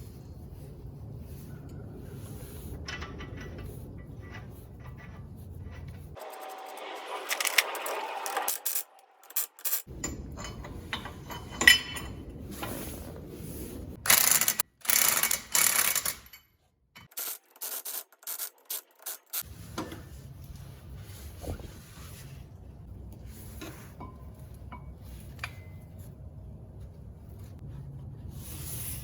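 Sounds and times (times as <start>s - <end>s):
metal scraping: 2.6s - 14.6s
ratcheting: 14.0s - 16.3s.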